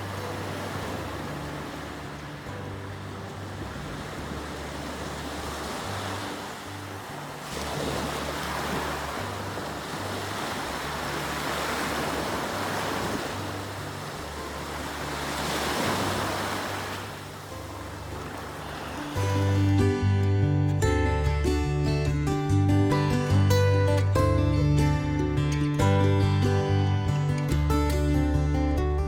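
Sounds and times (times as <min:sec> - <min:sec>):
sea surf washing in: 0:00.0 - 0:20.1
soft background music: 0:00.0 - 0:29.0.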